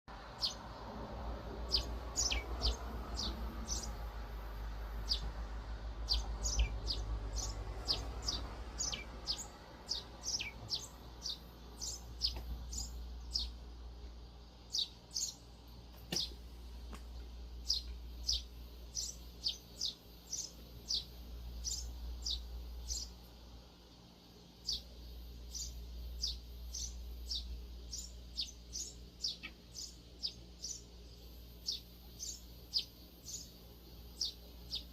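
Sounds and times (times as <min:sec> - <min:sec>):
low background rumble: 0:00.1 - 0:31.9
sparrows chirping: 0:00.1 - 0:34.9.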